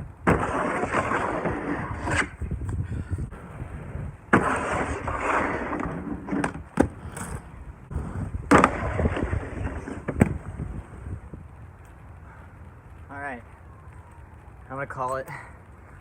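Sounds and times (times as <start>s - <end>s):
skates scraping along ledge: 0.3s - 2.4s, 3.4s - 10.7s.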